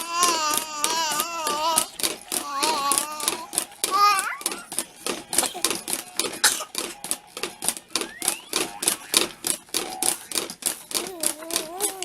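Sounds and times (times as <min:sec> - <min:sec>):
rapid irregular clicking and tapping: 0:00.0 - 0:12.0
child's voice: 0:11.0 - 0:12.0.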